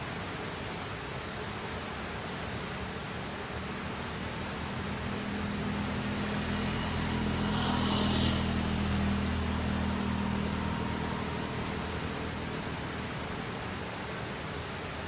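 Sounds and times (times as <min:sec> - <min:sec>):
river rushing: 0:00.0 - 0:15.0
vehicle passing on road: 0:02.8 - 0:15.0.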